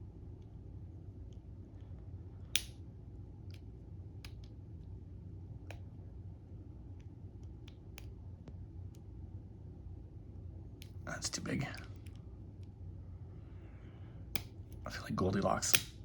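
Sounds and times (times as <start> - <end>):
metal clip snapping: 2.6 - 2.8.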